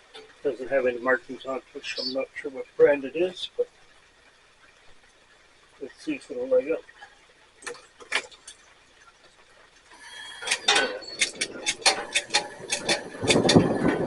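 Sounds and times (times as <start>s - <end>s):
loud gas rush: 9.9s - 10.8s
gas hissing: 9.9s - 14.0s.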